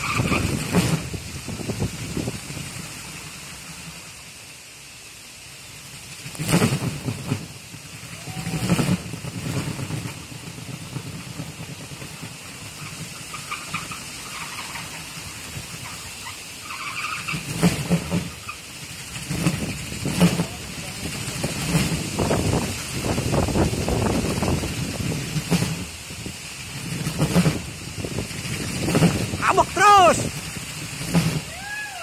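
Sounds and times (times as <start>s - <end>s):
wind buffeting microphone: 0.0s - 2.9s, 19.2s - 31.6s
wooden propeller whirring: 6.2s - 32.0s.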